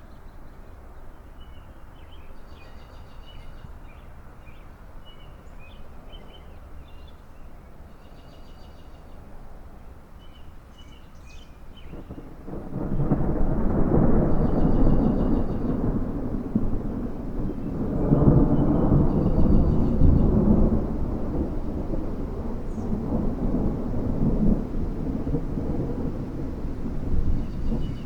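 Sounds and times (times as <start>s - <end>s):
rolling thunder: 11.8s - 28.0s.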